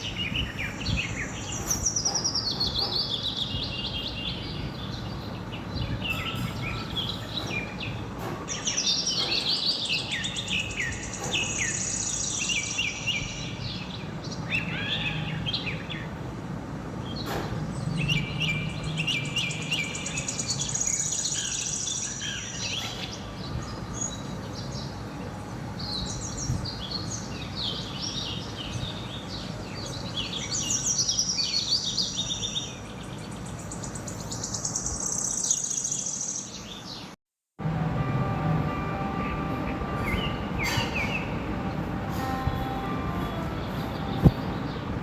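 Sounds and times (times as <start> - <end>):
birds chirping and singing: 0.0 - 16.3, 17.0 - 37.2, 38.9 - 45.0.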